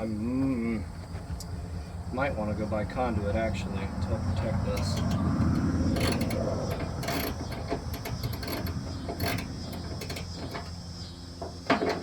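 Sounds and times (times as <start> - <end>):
parts clicking and rattling: 4.7 - 12.0.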